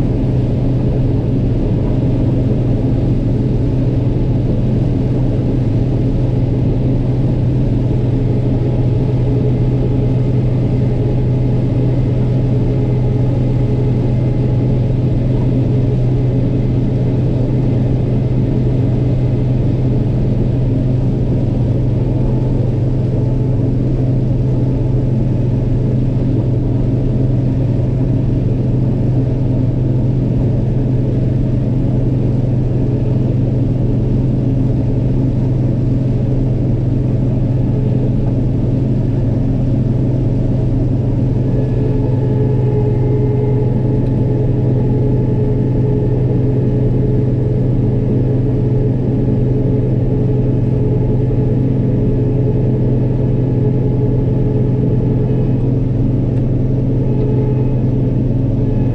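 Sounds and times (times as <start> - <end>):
diesel farm machinery droning: 0.0 - 58.9
higher whining tones: 40.9 - 58.9.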